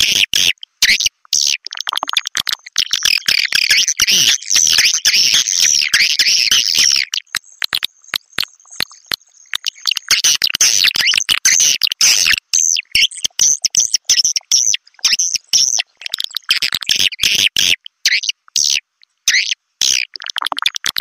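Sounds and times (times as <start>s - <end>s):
sharp clicks: 7.2s - 11.3s.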